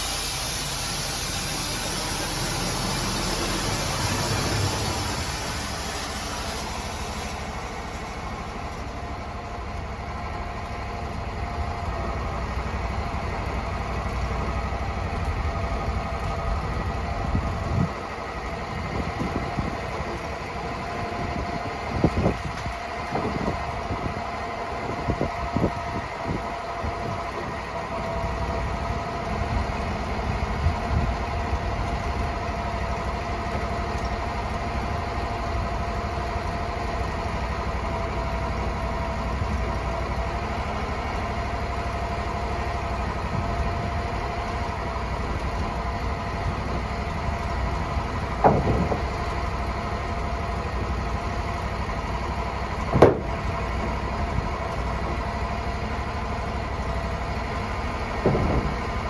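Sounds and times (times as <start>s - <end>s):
sawmill engine idling: 0.0s - 59.0s
sharp knocks: 48.4s - 49.2s, 52.9s - 53.4s, 58.1s - 59.0s.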